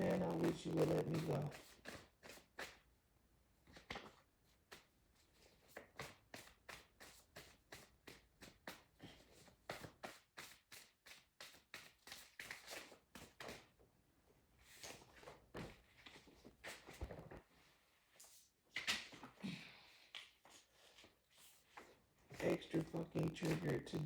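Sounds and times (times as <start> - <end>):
cards being shuffled: 0.0 - 2.8, 9.7 - 13.7, 21.8 - 24.0.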